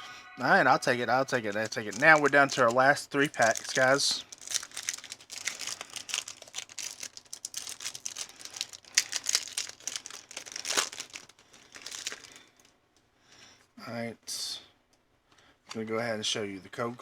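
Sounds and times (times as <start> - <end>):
foil wrapper crinkling: 0.8 - 12.8.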